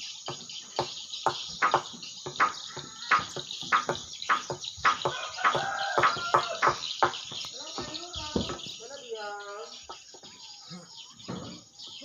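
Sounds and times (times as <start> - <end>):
sharp bird chirps: 0.0 - 12.0.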